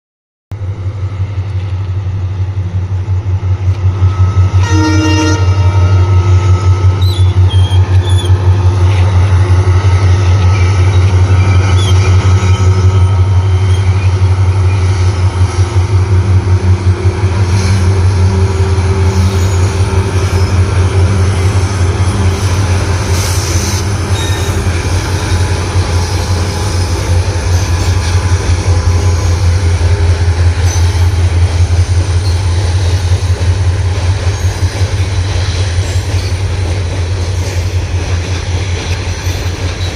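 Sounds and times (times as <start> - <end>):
diesel locomotive engine throbbing: 0.5 - 39.9
locomotive horn toot: 4.1 - 8.3, 17.6 - 25.4.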